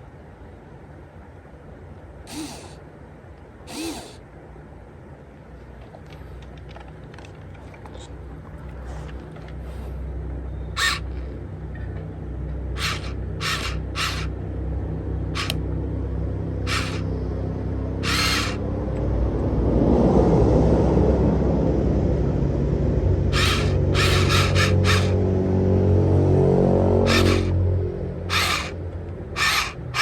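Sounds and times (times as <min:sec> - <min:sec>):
rasping high-pitched bursts: 0:02.3 - 0:02.8, 0:03.7 - 0:04.2, 0:10.8 - 0:11.1, 0:12.7 - 0:14.3, 0:15.4 - 0:15.6, 0:16.7 - 0:17.1, 0:18.0 - 0:18.6, 0:23.4 - 0:25.2, 0:27.0 - 0:27.6, 0:28.2 - 0:30.0
toy excavator motors whining: 0:02.3 - 0:02.8, 0:03.7 - 0:04.2, 0:10.7 - 0:11.3, 0:12.7 - 0:14.4, 0:15.3 - 0:15.6, 0:16.6 - 0:17.1, 0:18.0 - 0:18.6, 0:23.3 - 0:25.2, 0:27.0 - 0:30.0.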